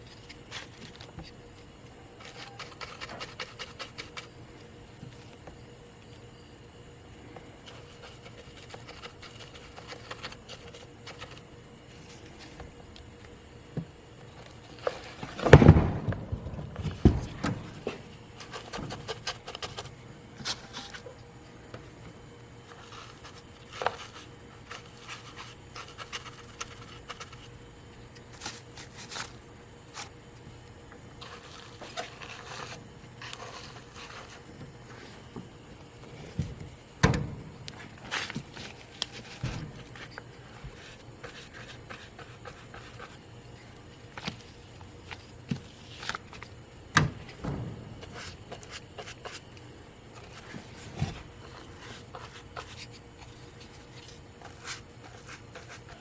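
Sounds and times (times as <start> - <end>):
stick scraping epoxy on plastic: 2.2 - 4.3
handling thump: 15.3 - 18.1, 36.3 - 38.4, 47.0 - 48.3.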